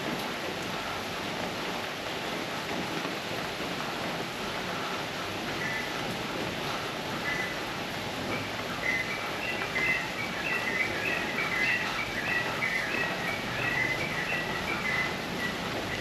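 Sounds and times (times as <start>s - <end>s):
steady rushing noise: 0.0s - 16.0s
bird whistling: 8.4s - 15.6s.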